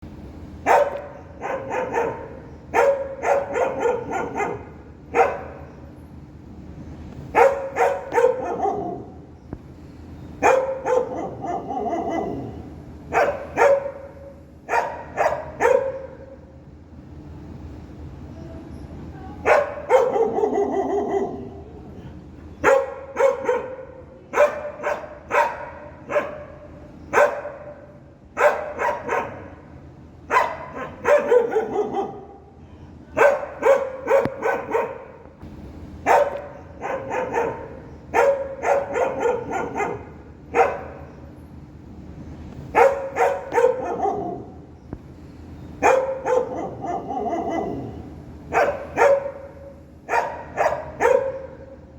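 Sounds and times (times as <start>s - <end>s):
dog barking: 0.6s - 5.8s, 7.3s - 9.2s, 10.4s - 16.4s, 19.4s - 21.6s, 22.6s - 29.6s, 30.3s - 32.5s, 33.2s - 35.2s, 36.0s - 41.1s, 42.7s - 44.6s, 45.8s - 51.8s.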